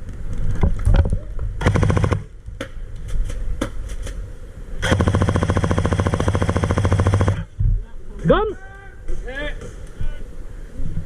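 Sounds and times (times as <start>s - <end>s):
airsoft gun firing: 1.6s - 2.3s, 4.8s - 7.5s.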